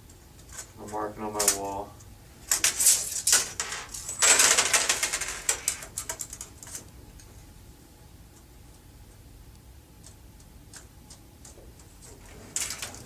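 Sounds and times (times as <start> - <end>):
sharp clicks and rattles: 2.5 - 7.3, 10.0 - 13.0.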